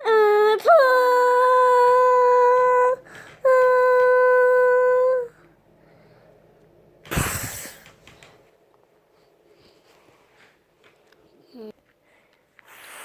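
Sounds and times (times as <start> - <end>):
short loud burst of noise: 7.1 - 7.9.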